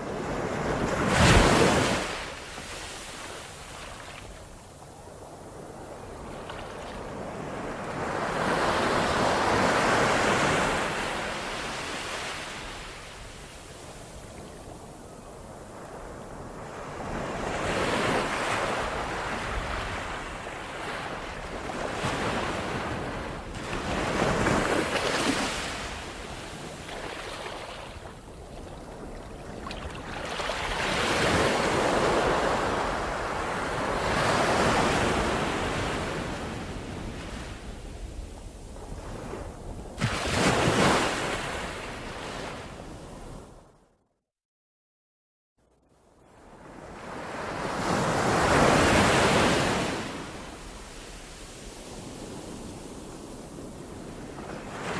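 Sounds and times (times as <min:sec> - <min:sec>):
ocean waves breaking: 0:00.1 - 0:04.6, 0:23.6 - 0:36.5.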